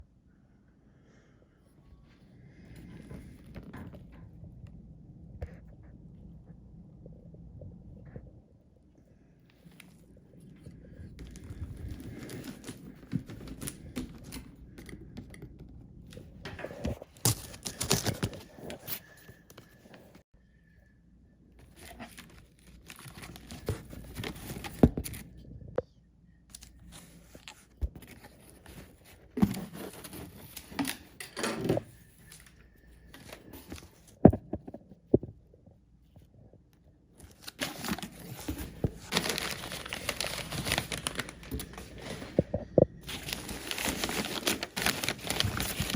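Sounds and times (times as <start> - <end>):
paper tearing and crinkling: 37.3 - 42.2, 43.1 - 45.9.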